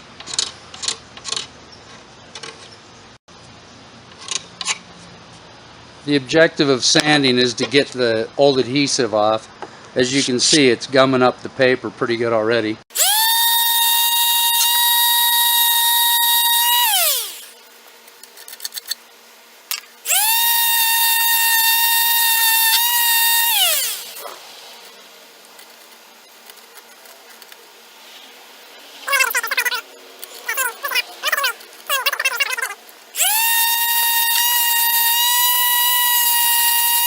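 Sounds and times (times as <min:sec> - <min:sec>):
electric sander whining: 0:12.9 - 0:17.5, 0:20.0 - 0:24.2, 0:30.4 - 0:37.0.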